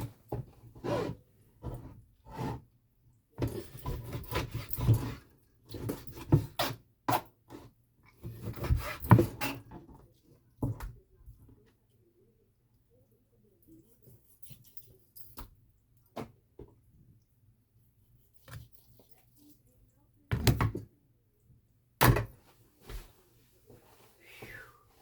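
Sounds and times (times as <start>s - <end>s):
rubbing and scraping handling noise: 0.0s - 2.7s, 3.4s - 10.5s.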